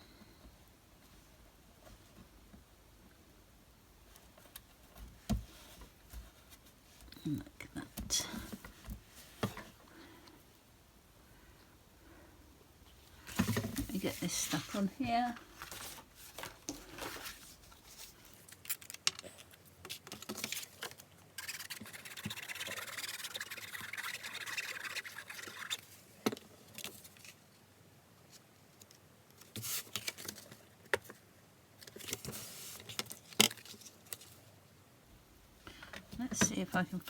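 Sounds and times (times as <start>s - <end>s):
scratchy rubbing on paper: 21.4s - 25.8s.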